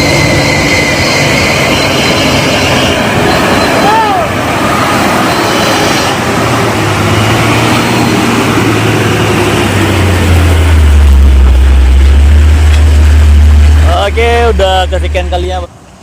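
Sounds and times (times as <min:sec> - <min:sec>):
vehicle engine working under load: 0:03.2 - 0:15.9
deep low drone: 0:06.3 - 0:15.5.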